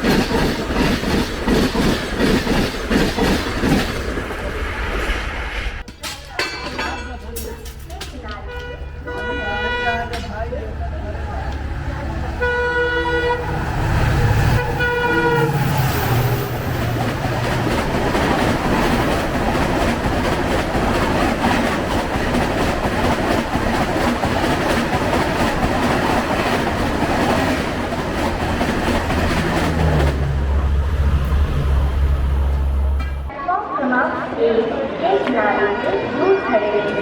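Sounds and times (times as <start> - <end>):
express train passing: 0.0 - 6.0, 6.9 - 37.0
locomotive horn blasts: 8.4 - 10.3, 12.3 - 13.6, 14.4 - 15.9.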